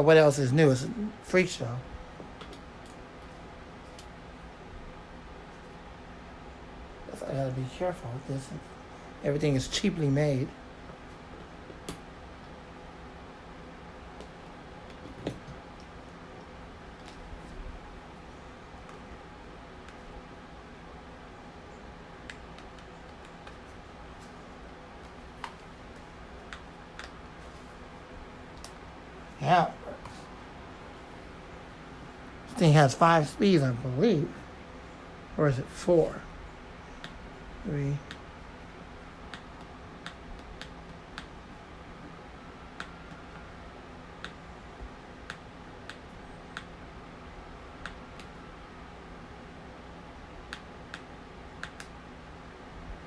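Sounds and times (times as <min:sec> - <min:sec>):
faint steady hum: 0:00.0 - 0:53.0
desk fan clicking: 0:02.2 - 0:04.2, 0:10.8 - 0:12.6, 0:14.1 - 0:17.3, 0:21.7 - 0:27.3, 0:28.5 - 0:28.9, 0:36.9 - 0:38.3, 0:39.2 - 0:46.8, 0:47.8 - 0:48.5, 0:50.4 - 0:52.0
plastic desk fan clicks: 0:02.3 - 0:03.0, 0:37.0 - 0:37.2, 0:39.3 - 0:41.4, 0:45.2 - 0:46.8, 0:50.5 - 0:52.0.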